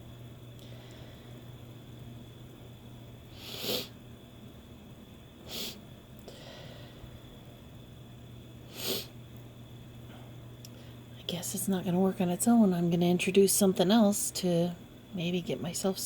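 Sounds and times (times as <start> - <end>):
person sniffing hard: 3.4 - 3.9, 5.5 - 5.8, 8.7 - 9.1.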